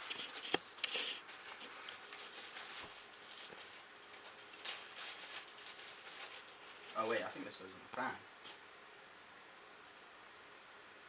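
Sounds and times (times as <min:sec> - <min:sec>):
packaging rustling and scratching: 0:00.0 - 0:07.5.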